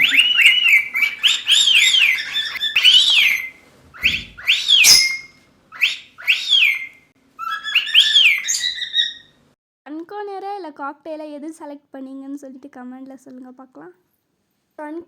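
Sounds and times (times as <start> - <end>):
parrot whistling: 0.0 - 9.3.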